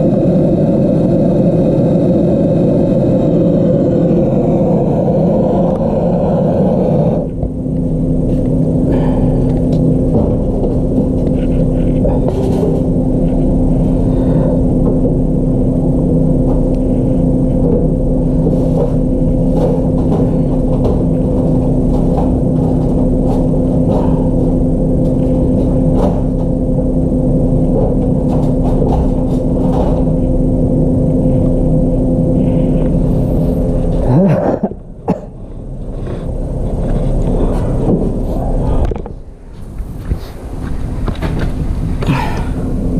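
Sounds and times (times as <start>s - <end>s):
refrigerator humming: 0.0s - 42.9s.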